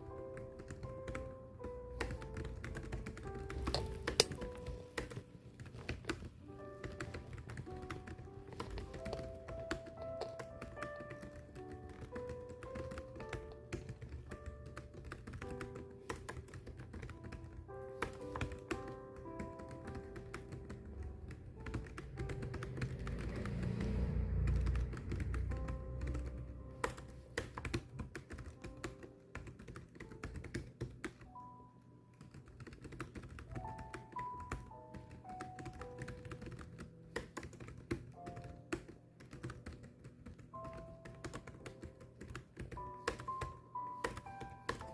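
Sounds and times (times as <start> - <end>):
fast typing on keys: 0.0 - 31.4, 32.2 - 44.9
soft background music: 0.0 - 44.9.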